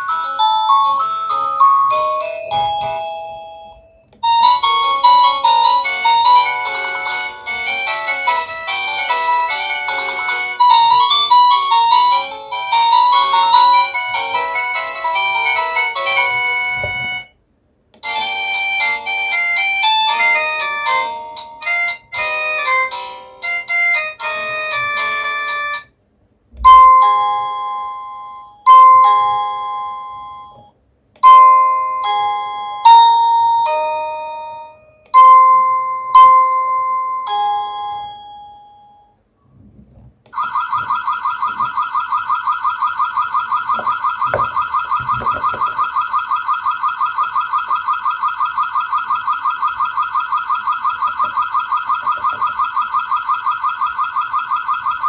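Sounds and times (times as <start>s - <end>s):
ding-dong doorbell chime: 0.0s - 17.3s, 26.6s - 39.2s.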